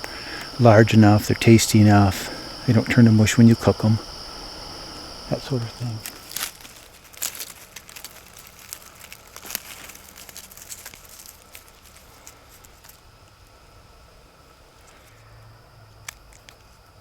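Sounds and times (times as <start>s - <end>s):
dry leaves and twigs crackling: 0.0s - 13.6s.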